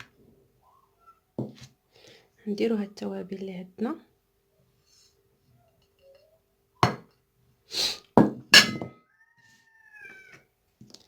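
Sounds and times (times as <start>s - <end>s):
kitchenware knocking on a pot: 8.2s - 9.0s.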